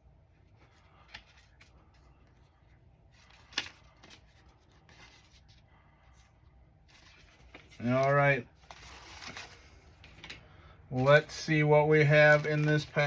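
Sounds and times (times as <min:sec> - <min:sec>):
paper cards rustling: 0:00.4 - 0:13.0.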